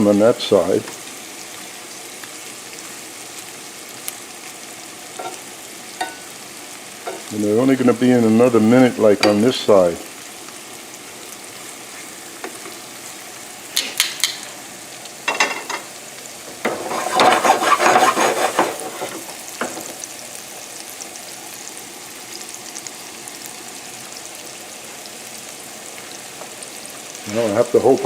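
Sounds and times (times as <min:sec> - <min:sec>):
shrimp sizzling in a frying pan: 0:00.0 - 0:28.0
utensil clatter in a pan: 0:05.2 - 0:06.3, 0:13.8 - 0:14.6, 0:15.2 - 0:15.9, 0:16.5 - 0:20.0.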